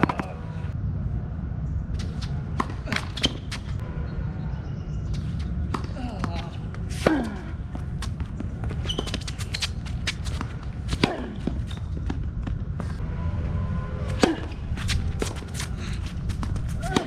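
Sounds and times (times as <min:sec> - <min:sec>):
steady low rumble: 0:00.2 - 0:08.8, 0:09.4 - 0:17.0
players' footsteps: 0:05.2 - 0:13.0, 0:14.4 - 0:17.0
tennis balls struck by rackets: 0:05.4 - 0:12.8.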